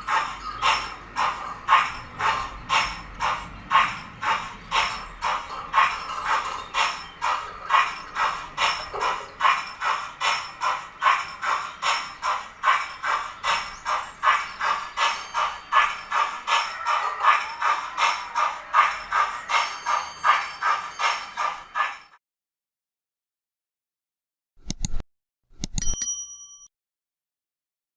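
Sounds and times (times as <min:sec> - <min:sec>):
steam locomotive exhaust chuffs: 0:00.0 - 0:22.1.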